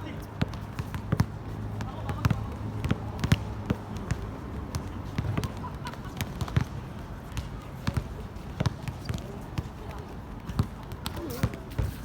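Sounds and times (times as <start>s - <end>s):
basketball bouncing on hard court: 0.4s - 5.6s.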